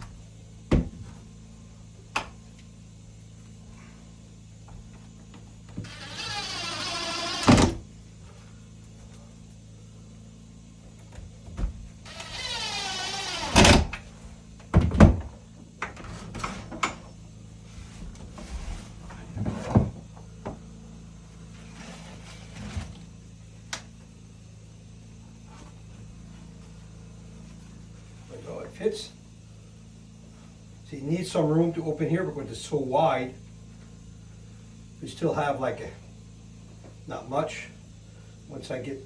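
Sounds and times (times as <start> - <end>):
sharp knocks and wooden thuds: 0.0 - 1.2
cordless drill whirring: 5.8 - 7.8, 12.0 - 14.0.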